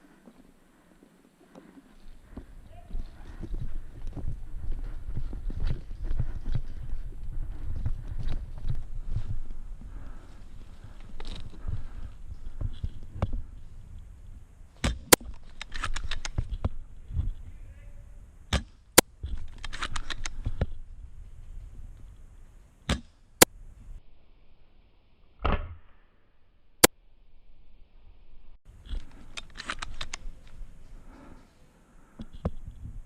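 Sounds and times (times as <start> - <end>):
rattling and rustling clicks: 14.8 - 16.7, 28.8 - 30.6.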